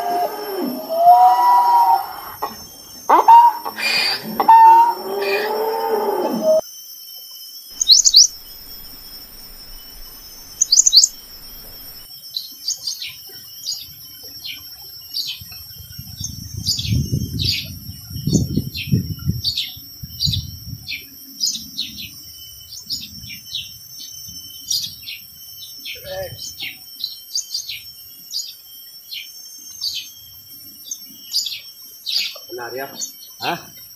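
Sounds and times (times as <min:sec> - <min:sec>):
birds chirping: 0:00.0 - 0:06.6, 0:07.7 - 0:12.1
high insect drone: 0:00.0 - 0:33.9.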